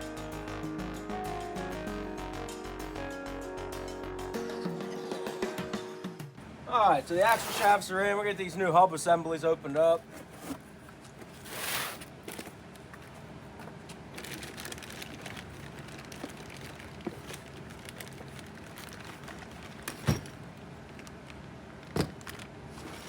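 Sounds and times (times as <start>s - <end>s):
packaging rustling and crinkling: 10.0s - 23.0s.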